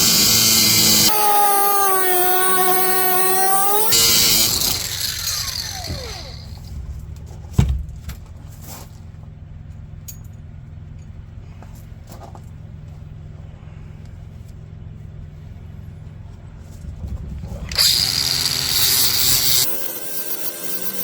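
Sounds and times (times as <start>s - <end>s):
power tool whining: 0.0s - 6.7s, 17.6s - 21.0s.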